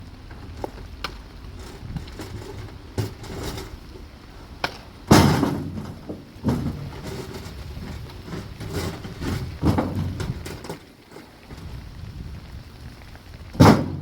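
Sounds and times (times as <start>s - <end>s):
loud heavy thud: 5.1s - 7.2s, 13.6s - 14.0s
low rumbling background: 11.4s - 14.0s.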